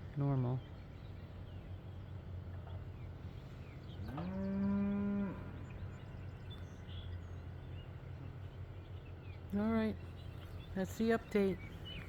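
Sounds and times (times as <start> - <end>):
cow mooing: 4.1 - 5.5.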